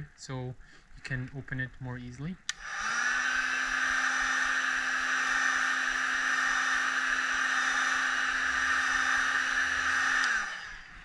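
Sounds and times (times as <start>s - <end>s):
hot air gun blowing: 2.5s - 11.0s.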